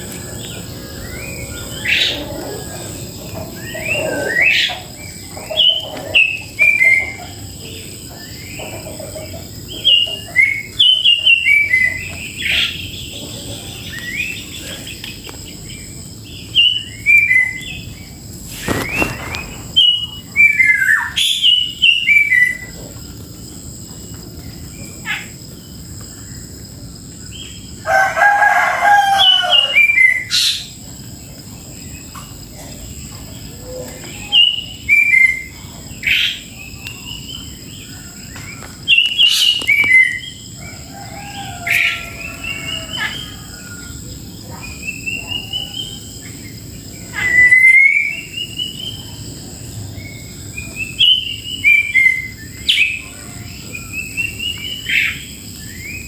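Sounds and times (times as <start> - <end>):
songbirds whistling: 0.0 - 22.9, 24.3 - 30.8, 31.6 - 56.0
rooster crowing: 27.8 - 30.3, 40.4 - 44.2.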